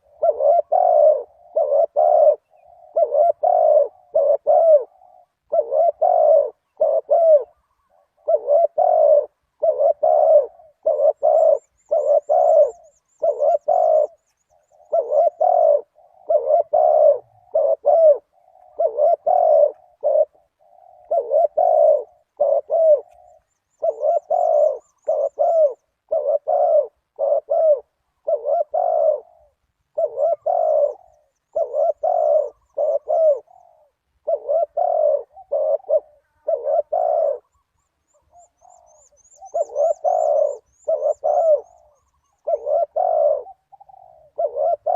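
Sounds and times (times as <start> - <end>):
dove cooing: 0.0 - 44.9
small bird twittering: 10.9 - 26.8, 34.6 - 44.9.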